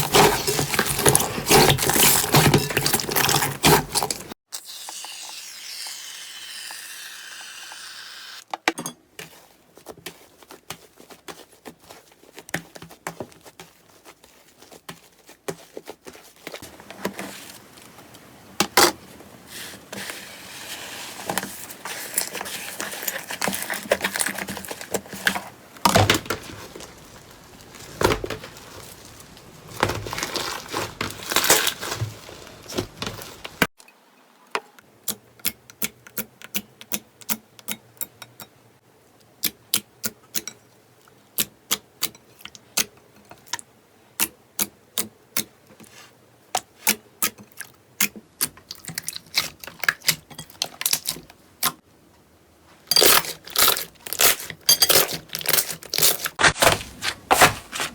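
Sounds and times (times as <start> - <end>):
slime crackling and squishing: 26.0 - 33.7, 53.0 - 57.9.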